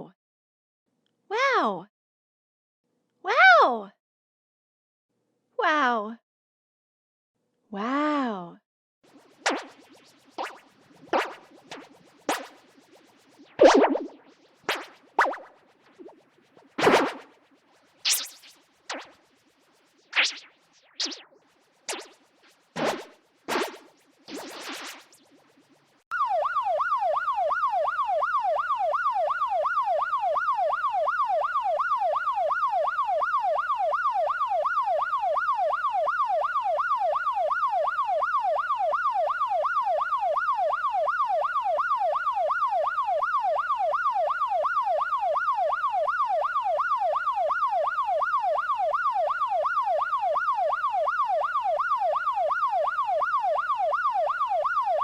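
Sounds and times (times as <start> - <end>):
police siren yelping: 9.2 - 17.5, 18.1 - 19.2, 23.6 - 55.0.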